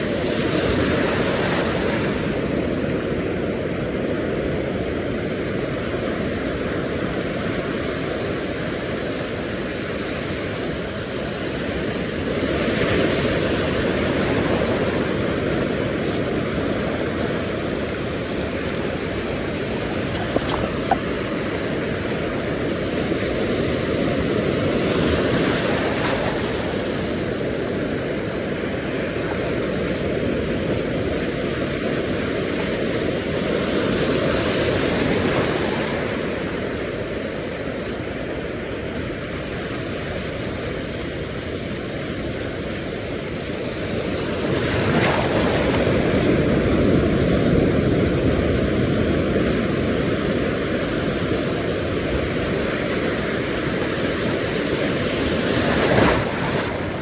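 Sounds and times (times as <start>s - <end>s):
ocean surf washing onto beach: 0.0s - 57.0s.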